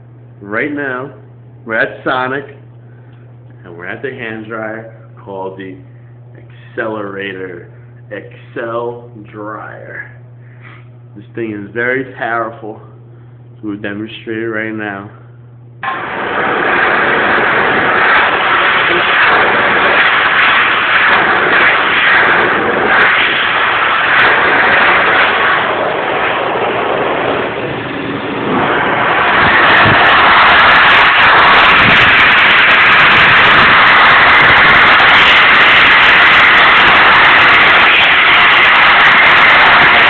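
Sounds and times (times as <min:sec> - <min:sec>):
electric hand dryer blowing: 0:15.8 - 0:40.0.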